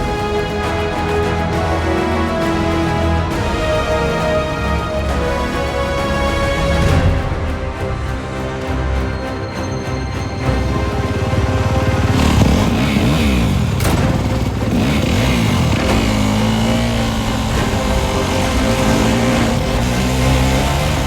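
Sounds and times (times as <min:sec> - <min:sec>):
film score music: 0:00.0 - 0:21.0
motorcycle engine revving: 0:10.6 - 0:21.0
sharp crack: 0:12.5 - 0:16.4.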